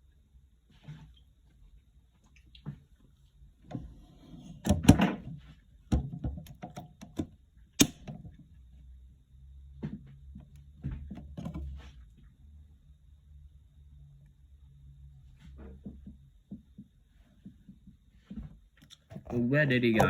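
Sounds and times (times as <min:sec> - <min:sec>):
knocks clicks and rustles of handling: 0:04.6 - 0:08.4.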